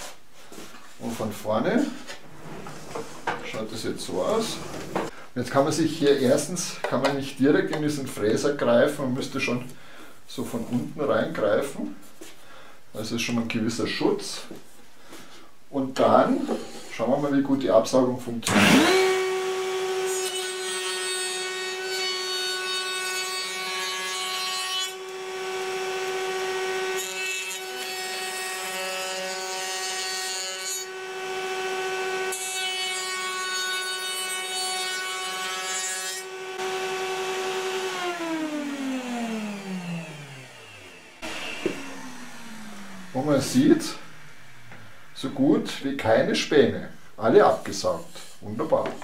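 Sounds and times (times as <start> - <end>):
router motor winding down: 18.4 - 20.1, 36.4 - 45.5
router cutting wood: 18.4 - 45.8
vacuum cleaner running: 18.5 - 20.0, 36.3 - 45.5.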